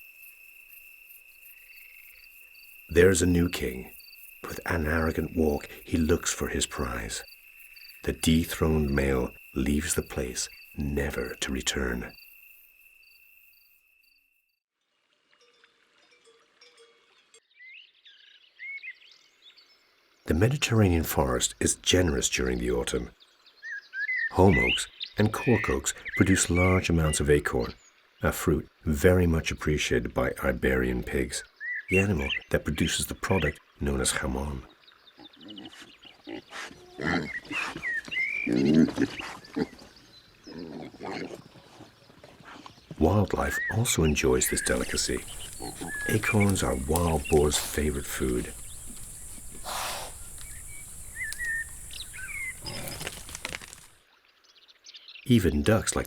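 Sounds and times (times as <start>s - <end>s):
insect trill: 0.0s - 14.6s, 43.4s - 54.0s
pigs grunting: 35.3s - 39.9s, 40.5s - 42.6s, 44.3s - 53.7s
soft bird chirps: 41.7s - 56.0s
pig squeaks: 44.4s - 53.5s.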